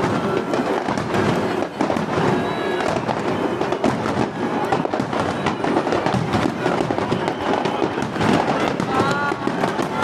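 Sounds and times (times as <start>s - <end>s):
fireworks bangs and crackling: 0.0s - 10.0s.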